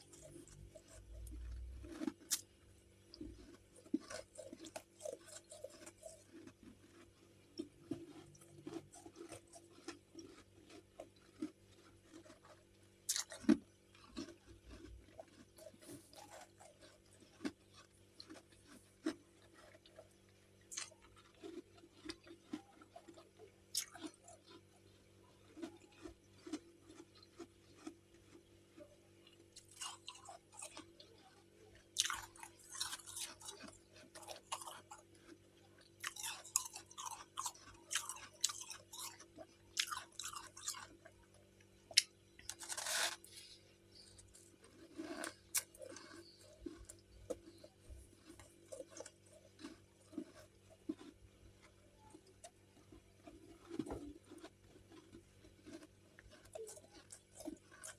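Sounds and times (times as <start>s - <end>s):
quiet chewing: 0.0s - 57.9s
crunching frost: 42.4s - 52.3s.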